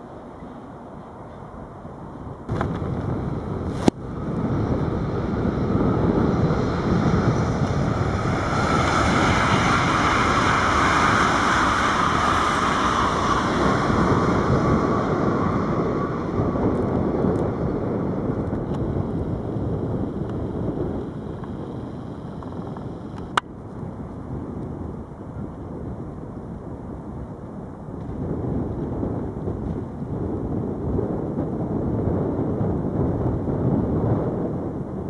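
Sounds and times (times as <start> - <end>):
train wheels rumbling on rail: 0.0 - 23.5.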